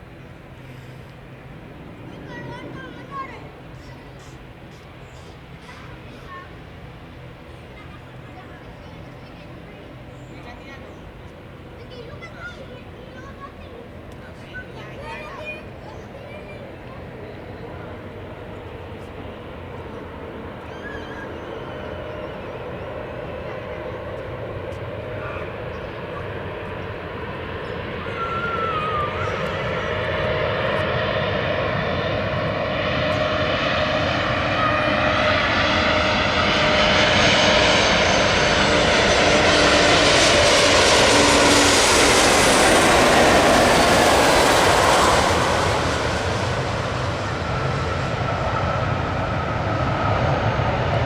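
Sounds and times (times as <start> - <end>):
jet engines roaring: 13.2 - 51.0.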